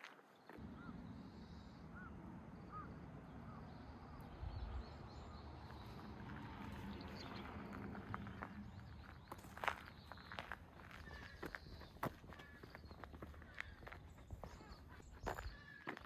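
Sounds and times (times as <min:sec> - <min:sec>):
low rumble: 0:00.6 - 0:11.1.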